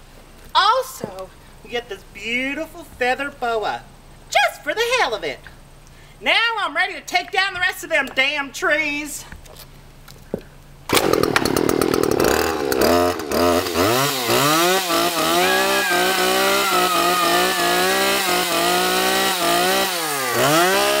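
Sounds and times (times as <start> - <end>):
chainsaw revving: 10.9 - 21.0.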